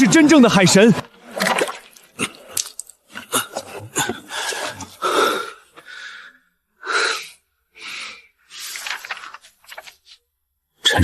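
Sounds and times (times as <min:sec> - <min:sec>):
person breathing heavily: 0:03.9 - 0:08.8.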